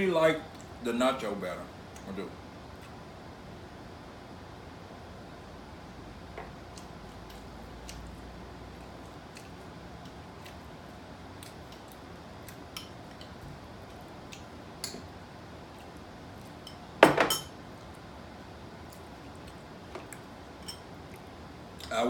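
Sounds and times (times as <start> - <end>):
dishes and cutlery clinking: 14.8 - 15.1, 16.6 - 17.6.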